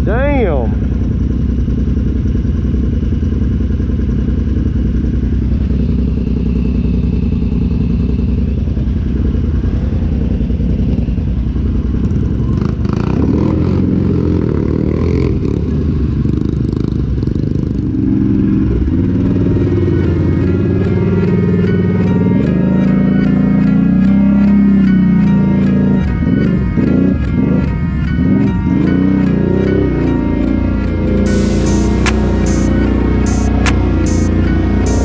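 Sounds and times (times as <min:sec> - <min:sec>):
utility vehicle engine running: 0:31.3 - 0:35.0.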